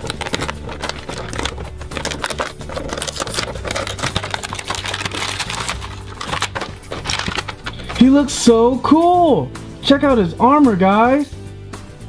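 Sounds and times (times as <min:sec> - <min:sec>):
plastic packaging crinkling: 0:00.0 - 0:08.4.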